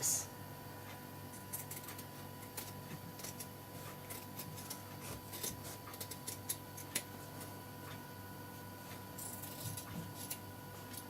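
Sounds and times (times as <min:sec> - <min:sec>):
faint steady hum: 0:00.0 - 0:11.0
scissors snipping: 0:01.3 - 0:07.1, 0:09.2 - 0:11.0.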